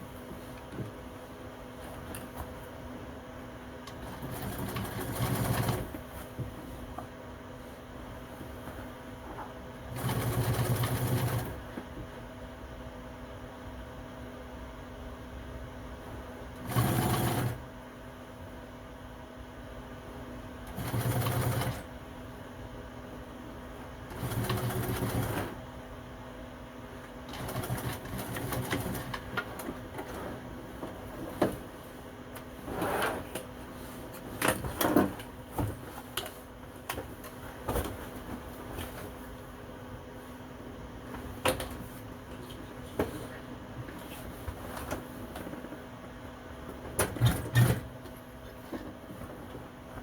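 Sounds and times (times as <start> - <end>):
sewing machine stitching: 4.0 - 5.9, 9.9 - 11.6, 16.6 - 17.6, 20.7 - 21.9, 24.1 - 25.6, 27.3 - 29.2, 47.0 - 47.9.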